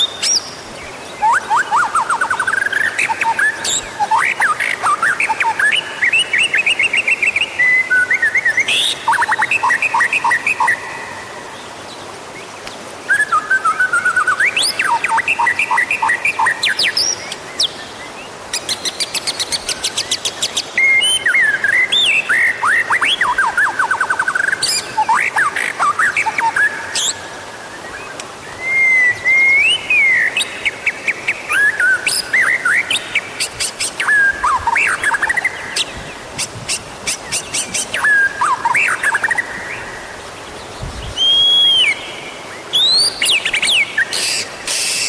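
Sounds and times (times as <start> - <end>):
bird singing whistled phrases: 13.1 - 17.2, 20.8 - 27.2, 27.8 - 30.7, 31.5 - 33.0, 34.0 - 35.9, 37.3 - 39.9, 41.1 - 42.1, 42.7 - 45.0.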